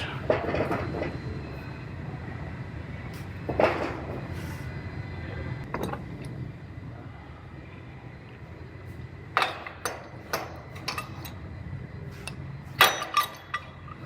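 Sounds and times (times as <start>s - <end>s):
steady low hum: 0.0s - 14.0s
metal clamps knocking and clanking: 9.4s - 11.3s, 12.8s - 13.9s.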